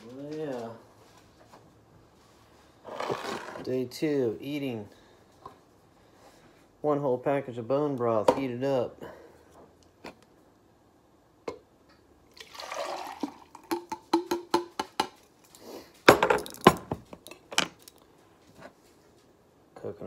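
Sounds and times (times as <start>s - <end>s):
containers clicking and knocking: 13.0s - 15.2s.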